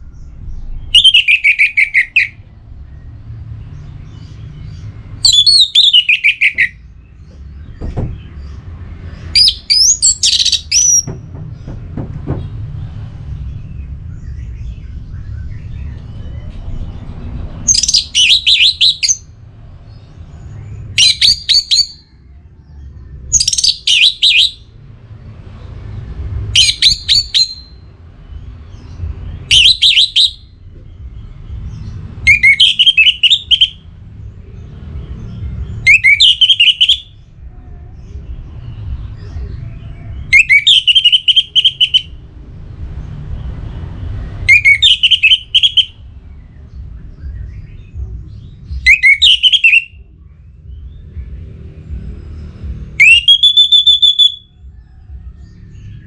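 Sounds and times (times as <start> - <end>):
steady low rumble: 6.6 - 23.9, 30.4 - 32.4, 41.8 - 44.6, 45.4 - 49.2, 49.9 - 53.0.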